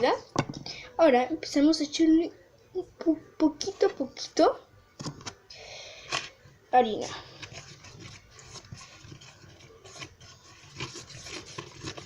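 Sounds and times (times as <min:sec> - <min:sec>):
utensil scraping in container: 0:07.1 - 0:12.0.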